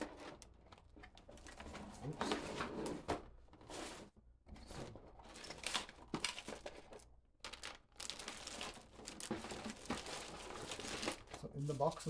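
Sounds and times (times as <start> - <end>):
packaging crinkling and rustling: 5.3 - 12.0.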